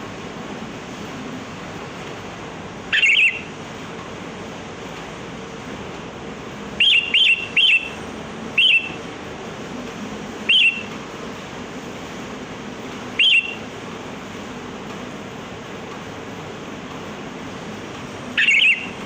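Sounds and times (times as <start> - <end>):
steady hiss: 0.0 - 19.0
bird calling sharp high notes: 2.9 - 3.5, 6.8 - 8.0, 8.6 - 9.0, 10.5 - 10.9, 13.2 - 13.7, 18.4 - 19.0.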